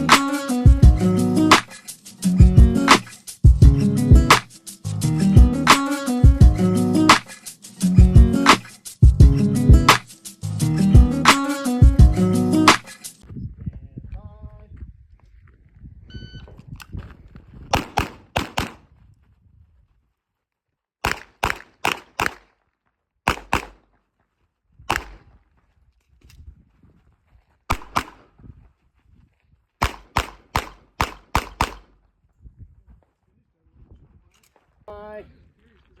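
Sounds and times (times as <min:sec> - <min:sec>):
pistol shots: 0:17.7 - 0:18.8, 0:21.0 - 0:22.5, 0:23.3 - 0:23.8, 0:24.9 - 0:25.3, 0:27.7 - 0:28.3, 0:29.8 - 0:31.9.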